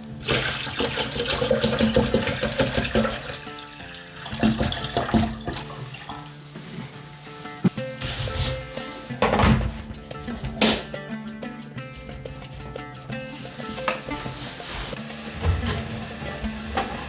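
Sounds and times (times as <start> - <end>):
background music: 0.0 - 17.0
water splashing: 0.2 - 6.5.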